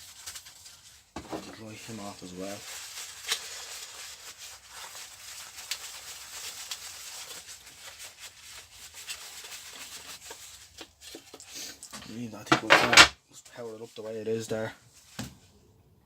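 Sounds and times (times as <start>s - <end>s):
cloth rubbing on plastic: 0.0s - 11.4s.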